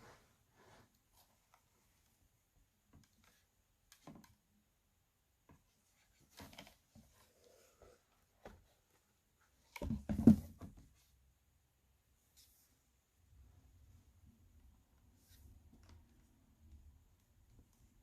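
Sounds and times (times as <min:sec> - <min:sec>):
book handling taps and rustles: 0:09.6 - 0:10.9
book bump: 0:09.8 - 0:10.8.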